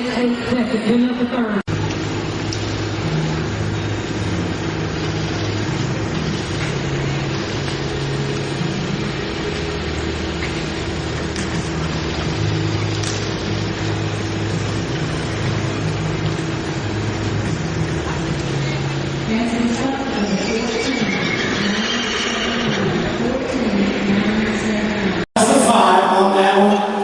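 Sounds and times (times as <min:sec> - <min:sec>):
noisy hiss: 0:00.0 - 0:27.0
engine droning: 0:01.7 - 0:25.6.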